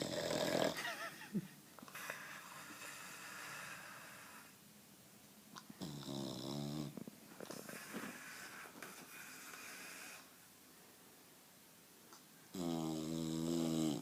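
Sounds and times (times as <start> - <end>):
dog snoring: 0.0 - 0.8, 2.0 - 4.5, 5.8 - 7.0, 12.5 - 14.0.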